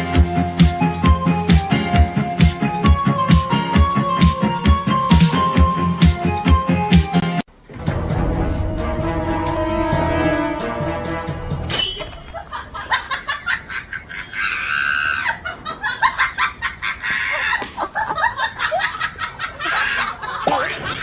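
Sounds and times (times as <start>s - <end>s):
music: 0.0s - 12.1s.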